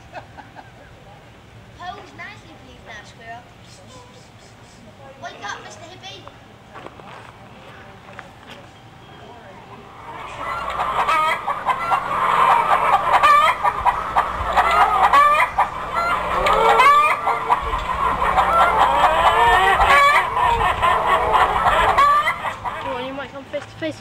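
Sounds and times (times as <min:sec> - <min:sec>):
many birds squawking: 0:09.2 - 0:23.1.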